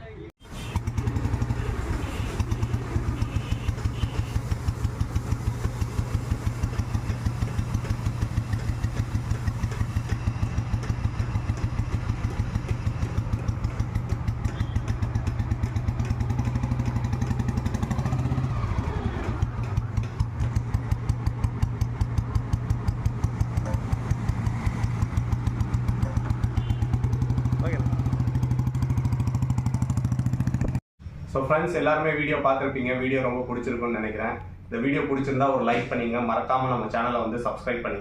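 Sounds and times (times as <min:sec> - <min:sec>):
motorcycle engine running: 0:00.6 - 0:30.8.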